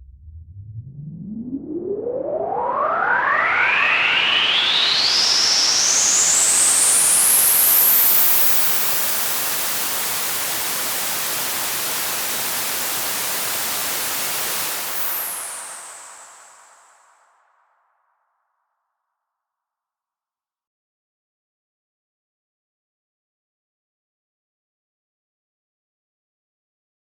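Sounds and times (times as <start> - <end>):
rising synth sweep: 0.0 - 17.1
loud rushing hiss: 4.7 - 17.2.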